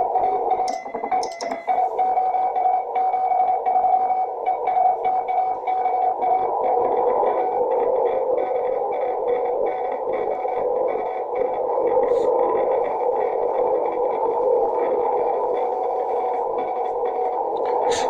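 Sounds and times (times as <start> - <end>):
morse code beeps: 0.6 - 2.1.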